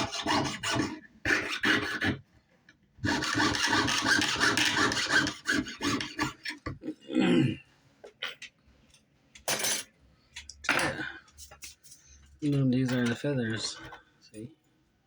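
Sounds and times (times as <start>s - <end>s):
hand tool rasping on metal: 0.0s - 2.2s, 3.0s - 6.6s.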